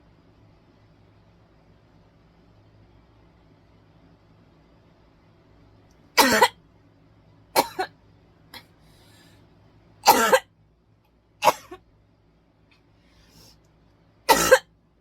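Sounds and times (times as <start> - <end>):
person coughing: 6.2 - 6.6, 7.6 - 7.9, 10.1 - 10.5, 11.4 - 11.8, 14.3 - 14.7.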